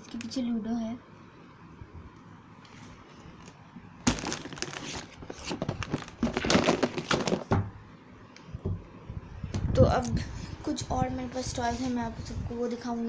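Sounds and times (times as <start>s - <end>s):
hard toys clattering and rattling: 4.1s - 7.5s.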